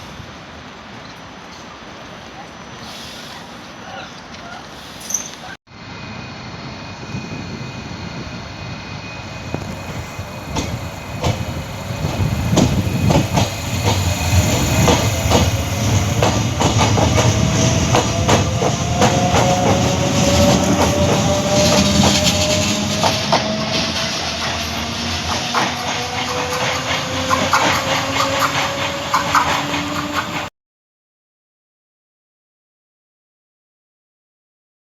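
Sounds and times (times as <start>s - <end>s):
train rumble: 0.0s - 30.5s
train wheels clattering: 9.6s - 30.5s.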